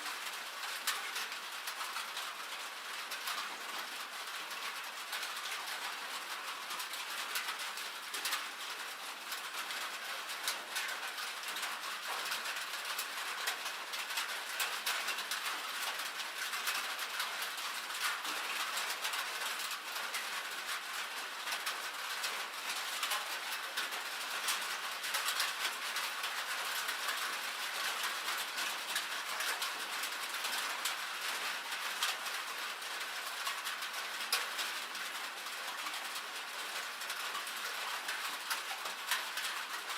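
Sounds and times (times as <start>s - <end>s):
rain and hail on a metal roof: 0.0s - 39.9s.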